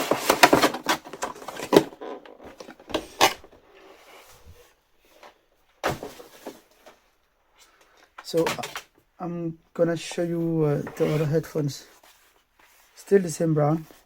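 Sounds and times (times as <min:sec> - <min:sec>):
packaging rustling: 0:00.0 - 0:03.6.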